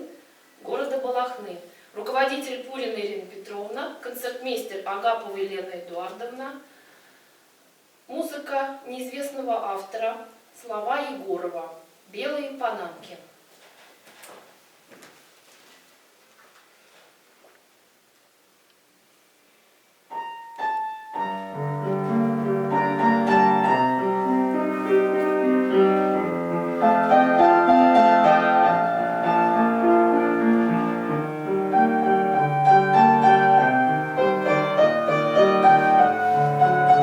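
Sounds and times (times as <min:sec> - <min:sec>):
piano chords and melody: 0:20.1 - 0:37.0.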